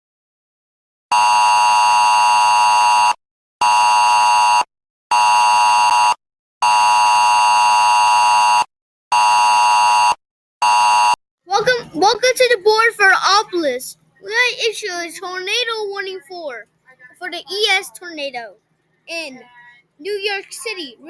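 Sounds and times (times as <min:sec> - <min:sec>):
buzzing two-tone alarm: 0:01.1 - 0:11.2.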